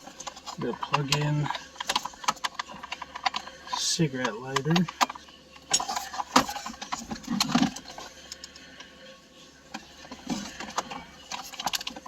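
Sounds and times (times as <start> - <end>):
plastic trim clicks and rustling: 0.2 - 8.5.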